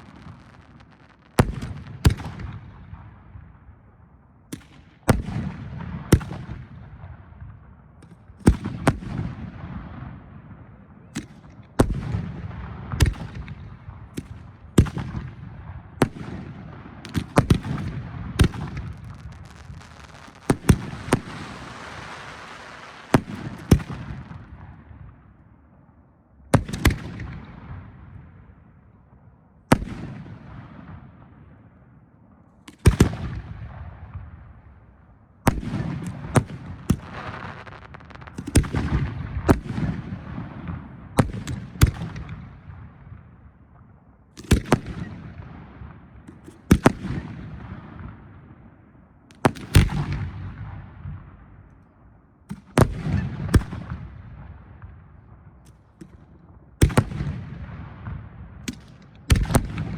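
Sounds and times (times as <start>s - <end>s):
firework bangs: 0.0s - 2.6s, 17.0s - 25.2s, 35.5s - 42.3s.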